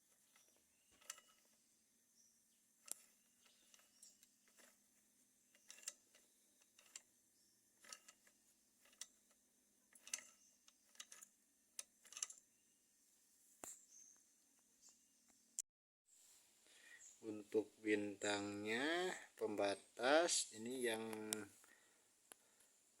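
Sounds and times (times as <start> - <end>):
metal parts clicking and tapping: 0.0 - 1.6, 2.8 - 12.5.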